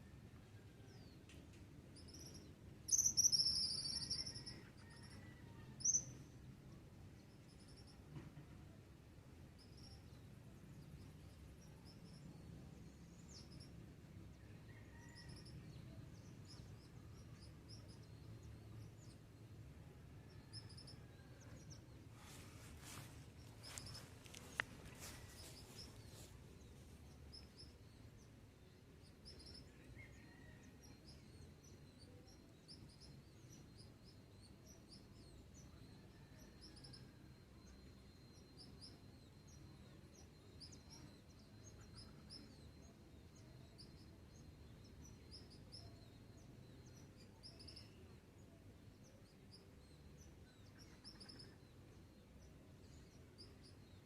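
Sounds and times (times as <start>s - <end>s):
low background hiss: 0.0s - 54.0s
small birds chirping: 2.0s - 6.1s, 20.3s - 28.4s, 29.0s - 54.0s.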